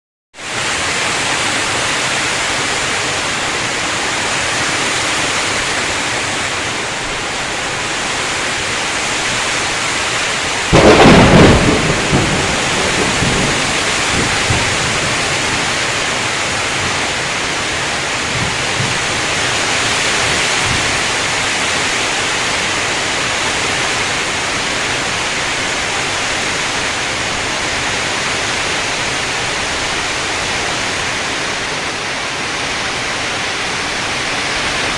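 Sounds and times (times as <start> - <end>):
heavy rain pouring: 0.4 - 34.9
thunderclap rumbling: 10.4 - 25.7.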